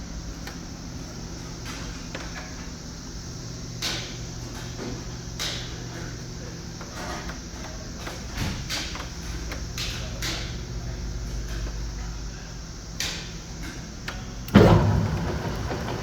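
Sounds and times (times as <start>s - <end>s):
machine humming: 14.5s - 16.0s.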